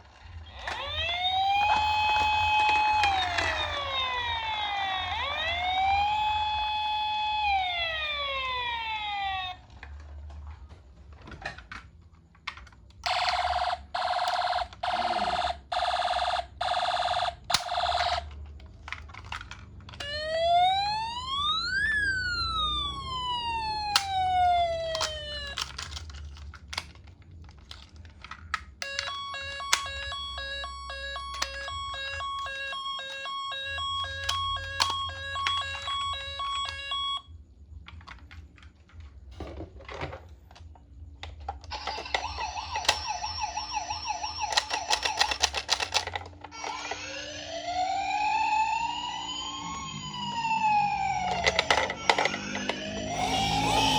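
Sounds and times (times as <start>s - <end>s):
toy siren beeping and wailing: 0.4s - 9.8s, 13.0s - 18.4s, 19.3s - 26.2s, 28.2s - 37.4s, 41.6s - 53.9s.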